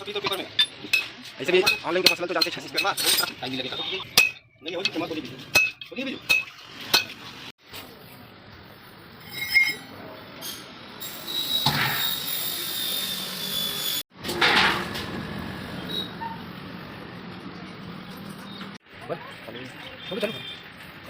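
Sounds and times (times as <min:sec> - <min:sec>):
metal tools clinking on workbench: 0:00.2 - 0:03.5.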